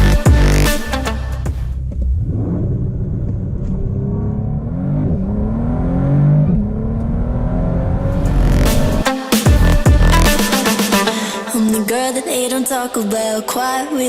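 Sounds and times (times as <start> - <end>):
car engine accelerating hard: 1.7 - 9.1.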